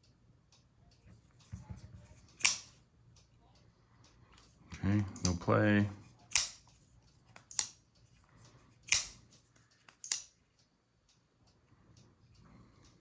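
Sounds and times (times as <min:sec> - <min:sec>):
folding knife blade snapping: 0:02.4 - 0:02.8, 0:06.3 - 0:06.7, 0:07.4 - 0:07.8, 0:08.9 - 0:09.2, 0:09.9 - 0:10.3.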